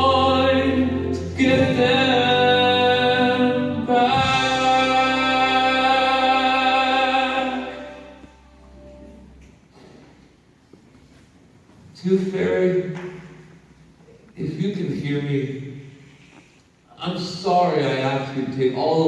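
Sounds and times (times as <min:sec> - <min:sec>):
sustained singing chords: 0:00.0 - 0:09.4.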